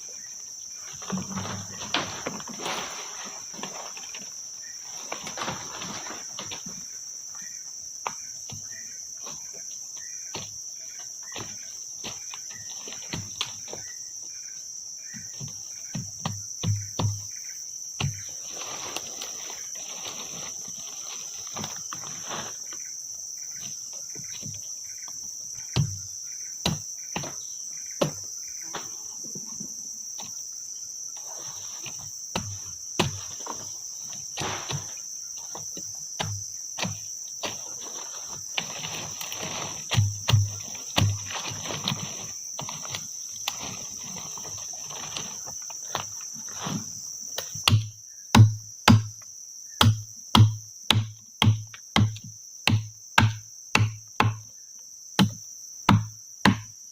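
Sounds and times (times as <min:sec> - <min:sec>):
insects chirping: 0:00.0 - 0:56.9
handling knocks and rustling: 0:00.8 - 0:07.0.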